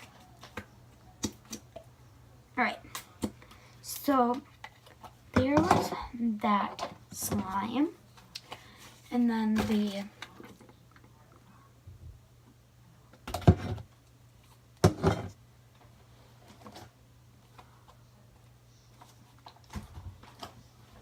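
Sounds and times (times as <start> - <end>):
containers knocking and rattling: 5.3 - 6.0, 14.8 - 15.4.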